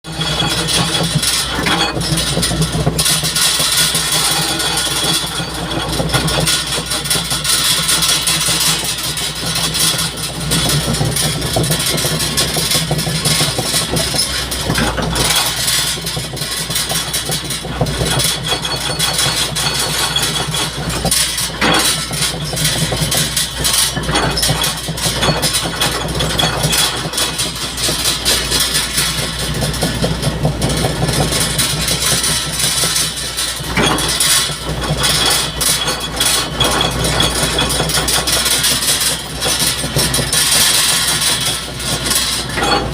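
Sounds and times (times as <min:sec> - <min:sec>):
engine humming steadily: 0:00.0 - 0:42.9.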